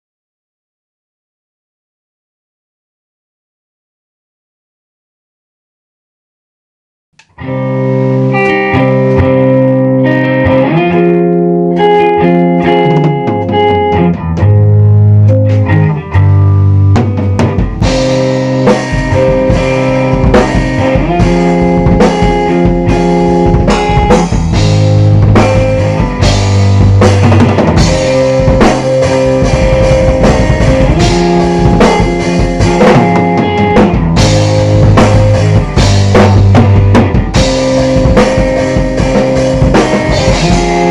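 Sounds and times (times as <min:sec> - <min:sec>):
drum kit beats: 0:07.2 - 0:40.9
guitar ringing chords: 0:07.2 - 0:40.9.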